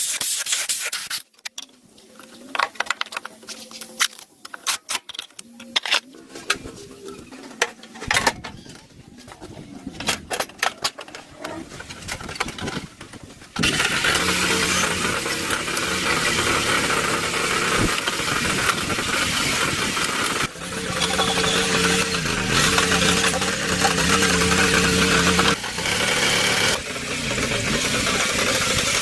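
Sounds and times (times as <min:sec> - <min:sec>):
tractor engine running: 0:13.6 - 0:29.0.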